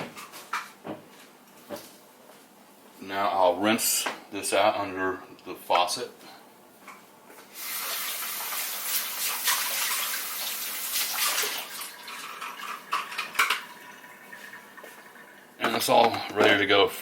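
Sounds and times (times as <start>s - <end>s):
faucet running: 7.5s - 16.1s.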